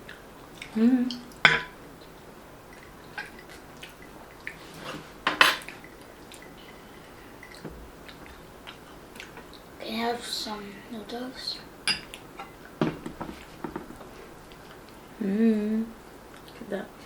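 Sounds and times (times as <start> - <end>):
cutlery clinking on a plate: 5.3 - 5.7.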